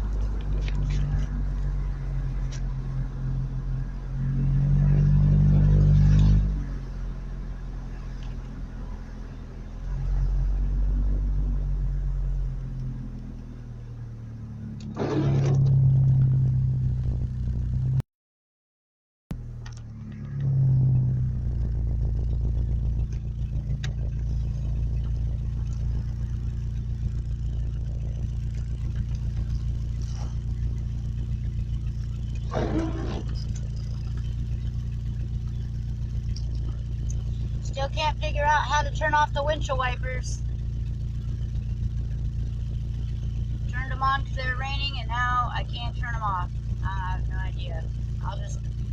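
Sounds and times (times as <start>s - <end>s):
vehicle engine rumbling: 0.0s - 18.0s, 19.3s - 48.9s
loud scraping noise: 32.5s - 33.5s.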